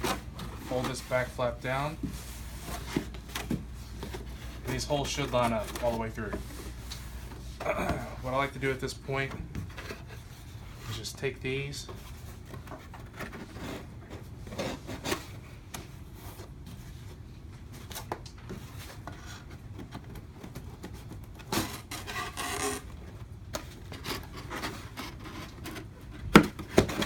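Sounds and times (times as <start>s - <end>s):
cardboard rubbing and scraping: 0.0s - 11.1s, 11.9s - 17.2s, 18.6s - 22.9s
cardboard rustling: 0.0s - 27.0s.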